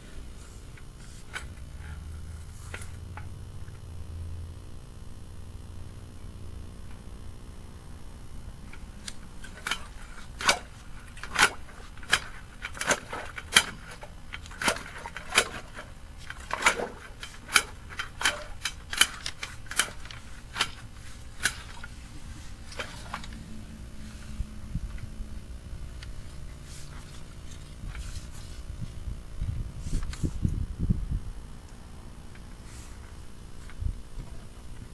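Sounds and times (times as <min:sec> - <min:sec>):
push cable clicking and knocking: 0:09.4 - 0:20.8.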